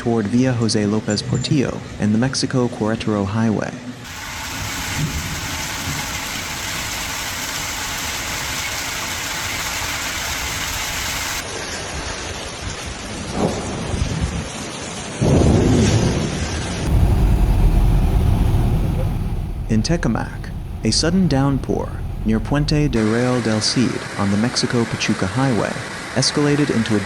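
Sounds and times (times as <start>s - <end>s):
heavy rain: 4.1s - 11.4s, 16.9s - 23.0s
loud low rumble: 16.9s - 23.0s.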